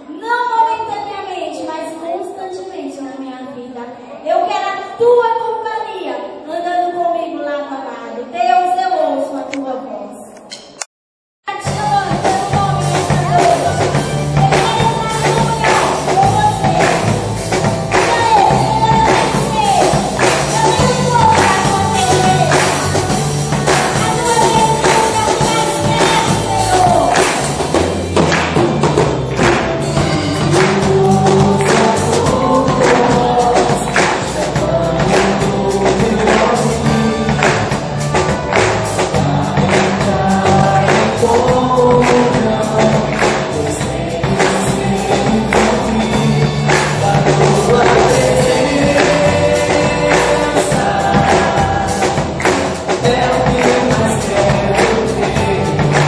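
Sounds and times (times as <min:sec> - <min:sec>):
gospel singing: 0:11.6 - 0:56.0
steady beat: 0:11.6 - 0:56.0.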